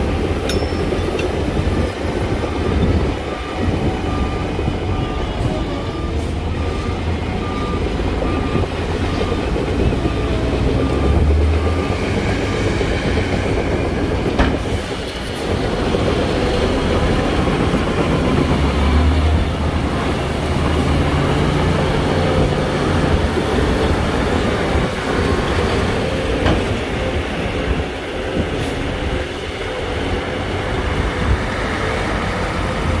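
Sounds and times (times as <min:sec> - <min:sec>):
heavy diesel machinery rumbling: 0:00.0 - 0:33.0
metallic clanking and knocks: 0:00.4 - 0:01.9
reversing alarm beeping: 0:01.7 - 0:14.0.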